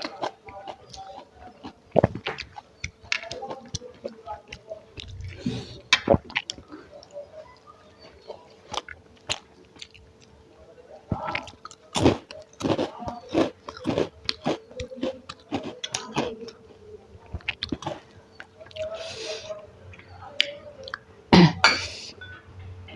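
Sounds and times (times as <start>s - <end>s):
person chewing and smacking: 0.0s - 10.4s, 11.1s - 19.3s.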